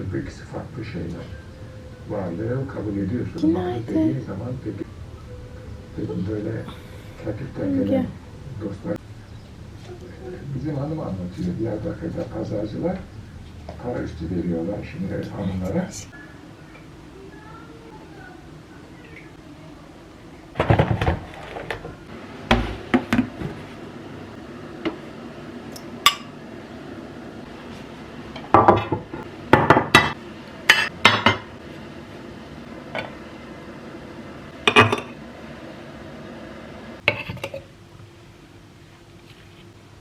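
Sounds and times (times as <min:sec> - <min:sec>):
dishes and metal utensils clinking: 0:34.7 - 0:35.2.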